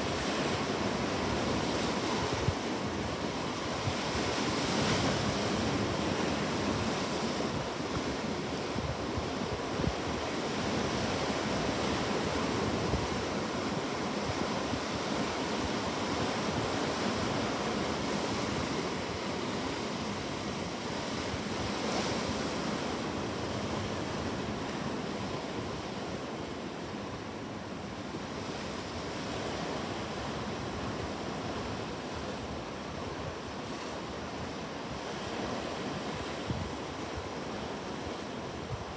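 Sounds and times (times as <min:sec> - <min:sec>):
wind noise: 0:36.1 - 0:37.4.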